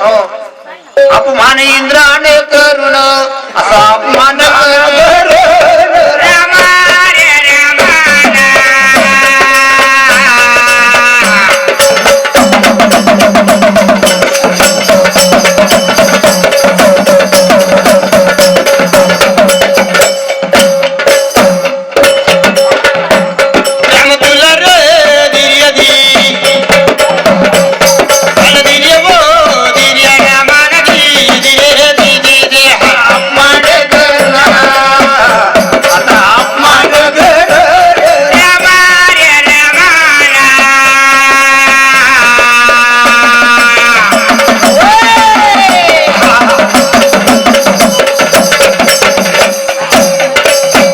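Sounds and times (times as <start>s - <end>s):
hand drum beating: 7.8s - 39.2s, 41.7s - 50.9s.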